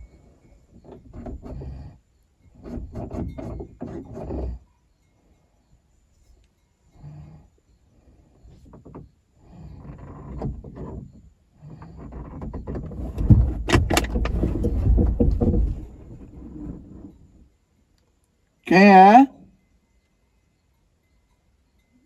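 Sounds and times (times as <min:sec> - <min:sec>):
car door rattling and clunking: 0:12.2 - 0:16.9.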